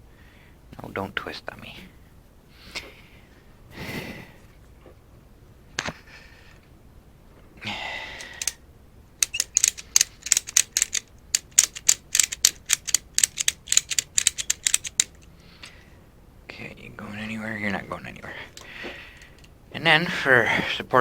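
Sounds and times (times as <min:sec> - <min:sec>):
ratchet strap clicking: 0:08.2 - 0:08.6, 0:09.2 - 0:15.7.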